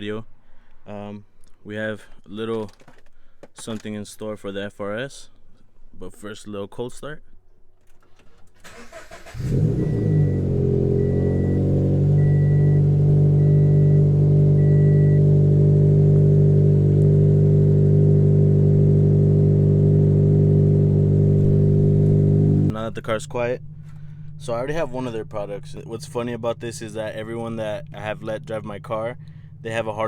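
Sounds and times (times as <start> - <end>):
car engine cranking and idling: 7.8 - 30.0
short car beeps: 8.7 - 15.3.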